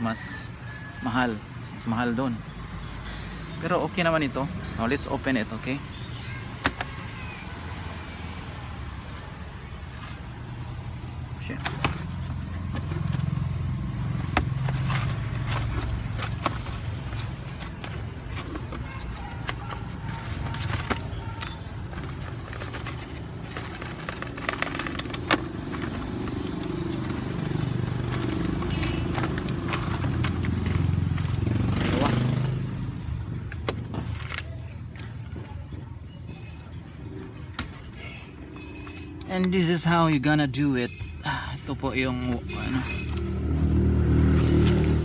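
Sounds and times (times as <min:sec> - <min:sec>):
low vehicle rumble: 0:06.1 - 0:38.5, 0:42.8 - 0:45.0.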